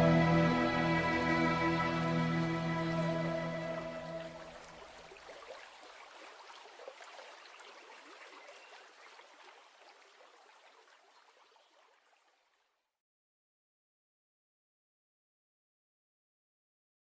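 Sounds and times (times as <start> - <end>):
music: 0.0 - 4.4
faint trickling water: 0.0 - 12.9.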